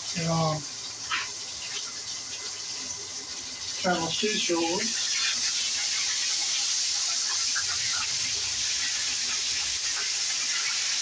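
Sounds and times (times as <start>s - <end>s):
fish frying in hot grease: 0.0s - 11.0s.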